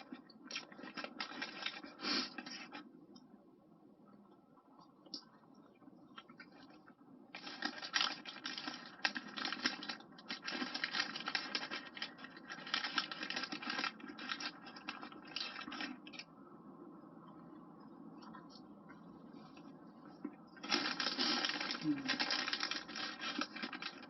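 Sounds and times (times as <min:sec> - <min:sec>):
paper packaging rustling: 0:00.0 - 0:02.8, 0:07.4 - 0:16.3, 0:20.6 - 0:24.0.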